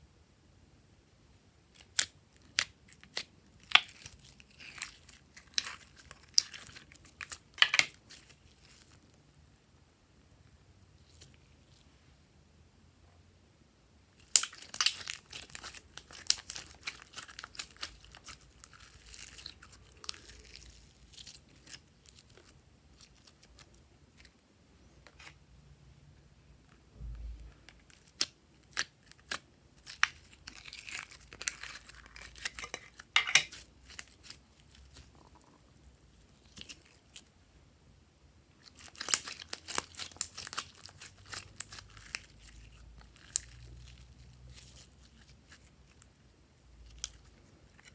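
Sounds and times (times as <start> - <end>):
slime crackling and clicking: 1.7 - 9.0, 14.2 - 23.5, 38.6 - 43.7.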